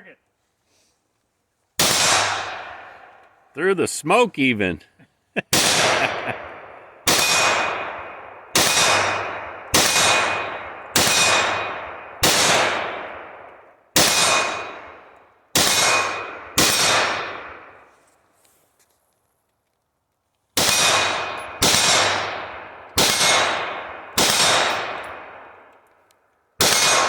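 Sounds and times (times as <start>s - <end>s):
rifle shots: 1.8s - 3.2s, 5.5s - 17.9s, 20.6s - 25.7s, 26.6s - 27.0s.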